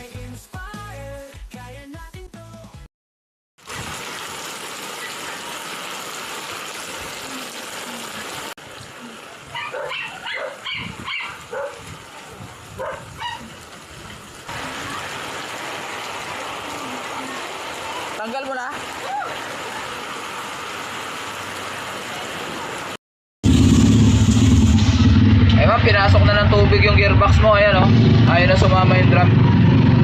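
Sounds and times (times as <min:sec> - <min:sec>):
dog barking: 0:09.5 - 0:11.8, 0:12.8 - 0:13.5.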